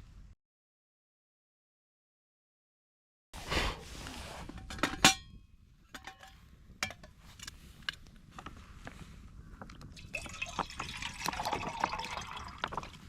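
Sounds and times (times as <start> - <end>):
rustle: 3.4 - 5.0
metal cookware clanking: 4.6 - 7.1.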